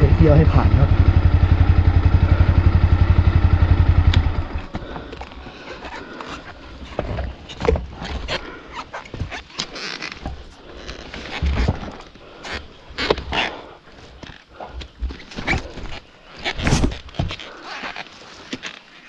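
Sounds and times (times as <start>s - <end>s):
motorcycle engine idling: 0.0s - 5.1s
knocks and scrapes: 4.7s - 13.6s.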